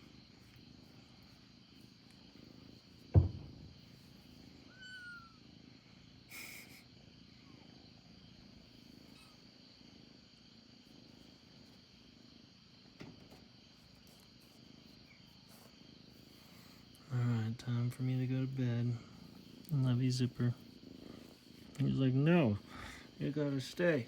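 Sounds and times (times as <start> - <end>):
cat purring: 0.0 - 12.7, 13.8 - 24.0
sharp thump: 3.1 - 3.8.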